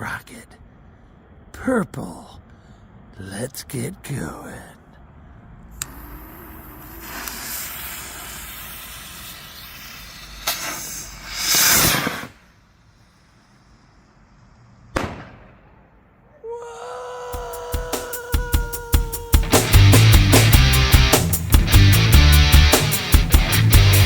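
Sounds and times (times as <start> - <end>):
fuse hissing: 5.8 - 14.3, 17.4 - 24.0
rocket launch whoosh: 5.9 - 12.6
firework bang: 6.4 - 12.5, 14.9 - 15.8
sharp pop: 15.0 - 15.6.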